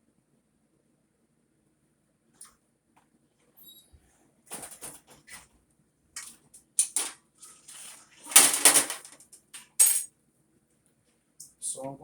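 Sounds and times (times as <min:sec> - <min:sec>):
cookware clattering and scraping: 0:07.7 - 0:10.1.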